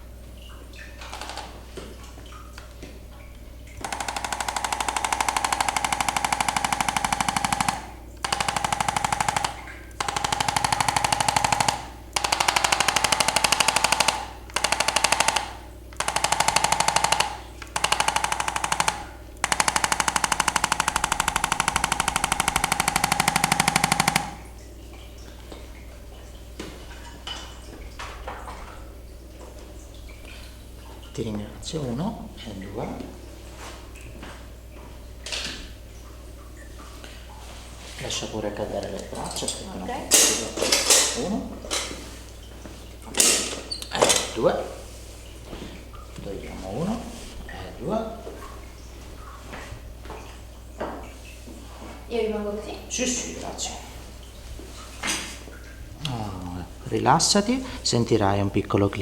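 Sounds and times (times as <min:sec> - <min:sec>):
motor hum: 0:03.5 - 0:25.3
percussion massager hammering: 0:03.8 - 0:24.5.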